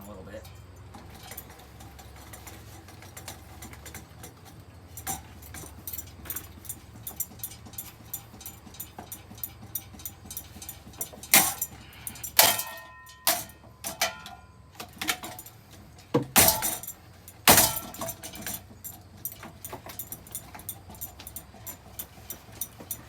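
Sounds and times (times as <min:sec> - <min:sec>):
ceiling fan ticking: 0:00.0 - 0:15.5
fan hit with clattering crack: 0:05.0 - 0:18.6
glass breaking: 0:16.3 - 0:18.3.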